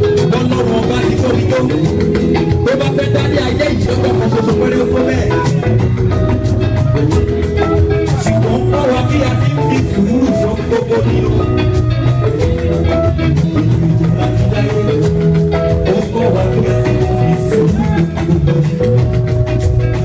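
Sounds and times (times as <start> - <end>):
upbeat instrumental music: 0.0 - 20.0.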